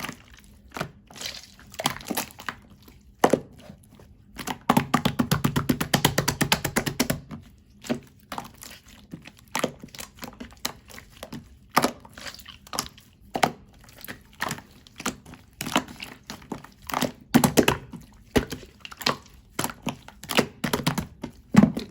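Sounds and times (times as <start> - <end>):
slime popping and squelching: 0.0 - 21.9.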